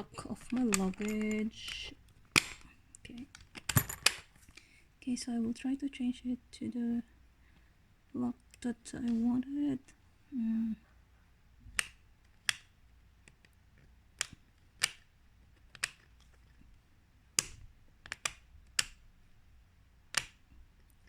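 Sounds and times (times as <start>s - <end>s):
plastic combination lock clicks: 0.4s - 1.5s, 11.8s - 16.4s.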